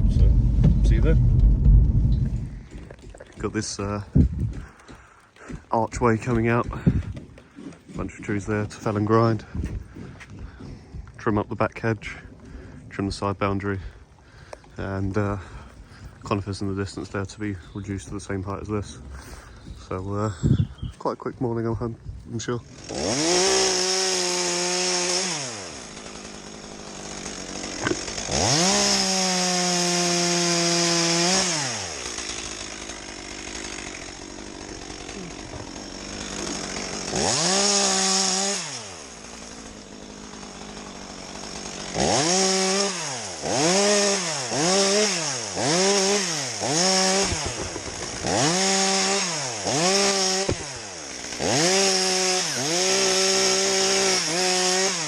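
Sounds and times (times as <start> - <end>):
chainsaw engine revving: 0.0 - 10.6, 22.5 - 55.0.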